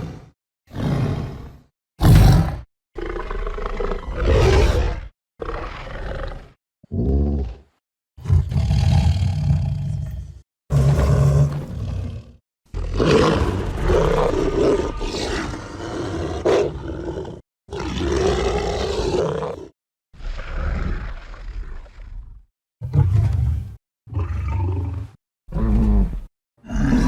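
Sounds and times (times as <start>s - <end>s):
monster vocalizations: 25.5s - 27.0s.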